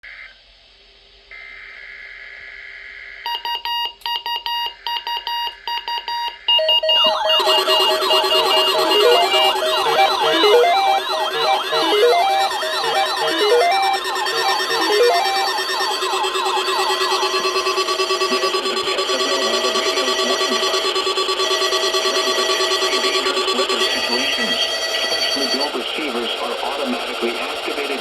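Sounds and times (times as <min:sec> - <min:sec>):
stepping beep tones: 0:03.3 - 0:28.0
rapid electronic beeping: 0:06.0 - 0:28.0
wailing siren: 0:06.6 - 0:28.0
steady electronic tone: 0:06.7 - 0:28.0.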